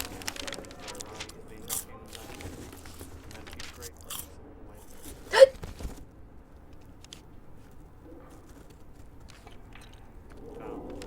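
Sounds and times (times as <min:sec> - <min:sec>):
person hiccuping: 0:05.3 - 0:05.5.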